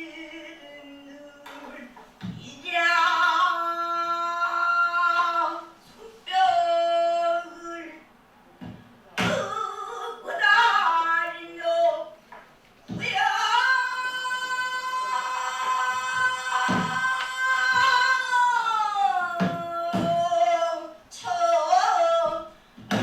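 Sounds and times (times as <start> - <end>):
person singing long ornamented notes: 12.9 - 22.6.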